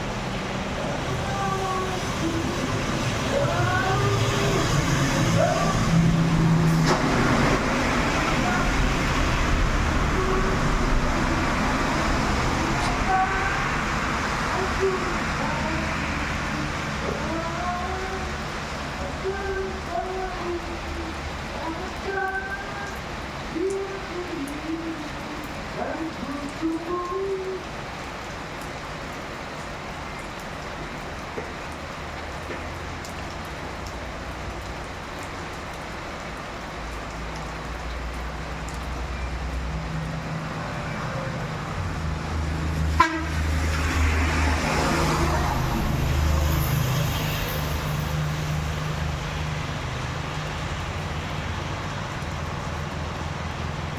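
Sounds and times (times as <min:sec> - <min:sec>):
heavy vehicle engine rumble: 0:00.0 - 0:53.9
steady rain: 0:00.0 - 0:53.9.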